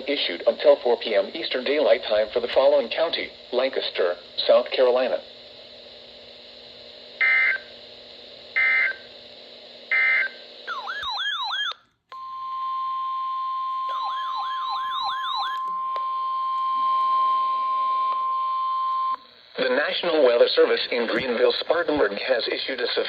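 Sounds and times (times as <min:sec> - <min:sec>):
steady warning alarm tone: 0:07.2 - 0:07.7, 0:08.6 - 0:09.0, 0:09.9 - 0:19.2.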